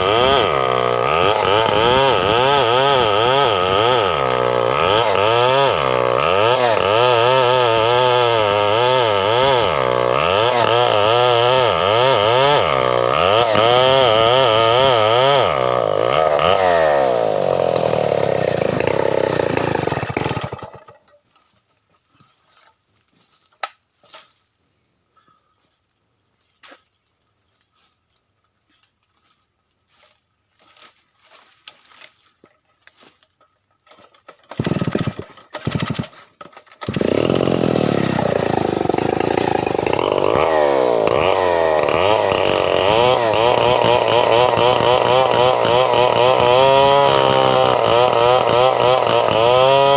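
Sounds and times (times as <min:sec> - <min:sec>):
chainsaw revving: 0:00.0 - 0:21.1, 0:33.9 - 0:49.9.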